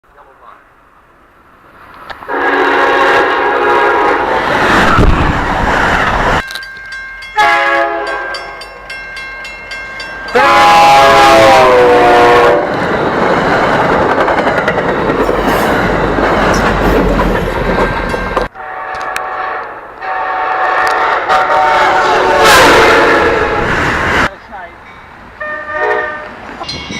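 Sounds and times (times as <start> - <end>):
train passing roar: 0.7 - 26.9
train horn blasts: 2.3 - 4.3, 7.4 - 8.6, 10.3 - 12.7, 18.5 - 23.7, 25.4 - 26.4
wheels clattering on rails: 12.7 - 18.5.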